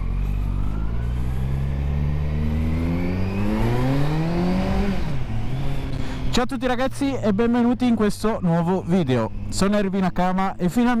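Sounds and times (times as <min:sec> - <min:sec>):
motorcycle engine accelerating: 0:00.0 - 0:06.4.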